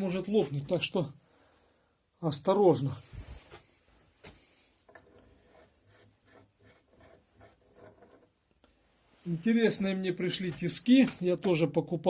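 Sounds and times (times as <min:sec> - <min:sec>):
faint scraping and rubbing: 0:02.8 - 0:11.3.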